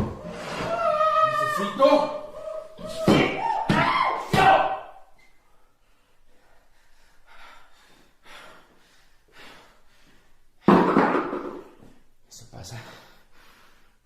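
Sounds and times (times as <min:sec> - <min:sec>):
quick breaths: 0:05.2 - 0:10.6, 0:12.8 - 0:14.0.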